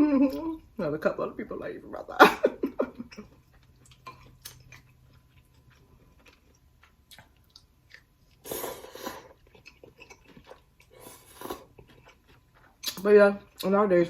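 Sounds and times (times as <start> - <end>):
soft chewing: 2.9 - 13.8.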